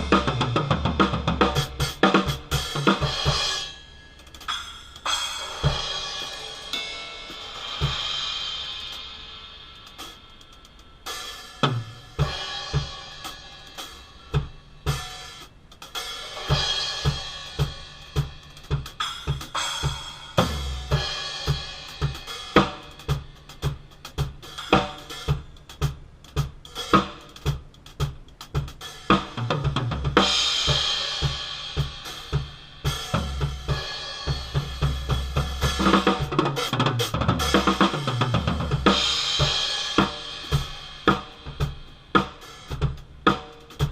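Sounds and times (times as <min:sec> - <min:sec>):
drum kit beat: 0:00.0 - 0:43.9
ringing crash cymbals: 0:02.6 - 0:15.4.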